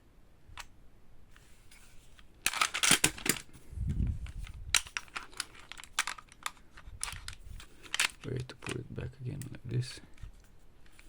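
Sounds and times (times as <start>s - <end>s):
pistol clicks and rattles: 2.4s - 3.5s, 4.3s - 8.8s.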